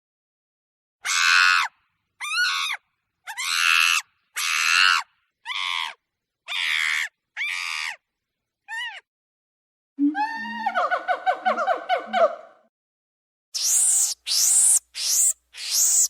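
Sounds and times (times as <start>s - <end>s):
monkey screaming: 1.0s - 8.0s, 8.7s - 9.1s, 13.6s - 16.0s.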